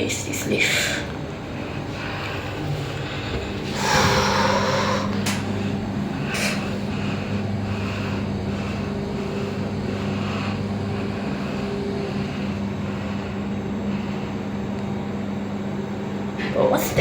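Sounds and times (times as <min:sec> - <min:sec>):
lift car humming: 0:00.0 - 0:17.0.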